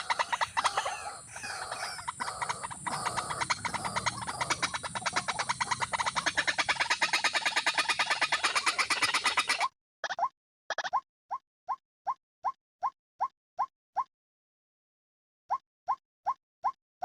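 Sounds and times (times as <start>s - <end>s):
pulsing animal call chorus: 0.0s - 9.7s.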